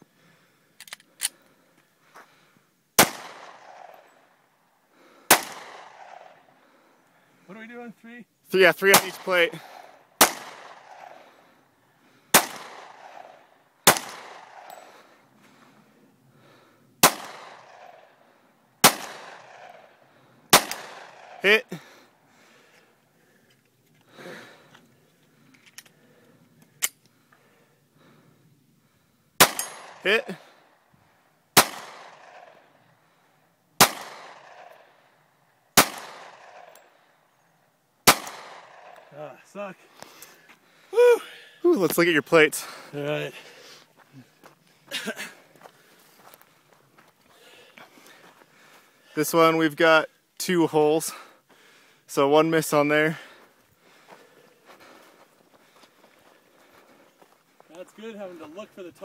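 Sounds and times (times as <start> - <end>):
gunshots with echo: 3.0 - 4.1, 5.3 - 6.4, 8.8 - 11.3, 12.3 - 14.8, 17.0 - 18.1, 18.8 - 21.7, 29.4 - 30.4, 31.6 - 32.7, 33.8 - 34.9, 35.8 - 36.7, 38.0 - 39.0.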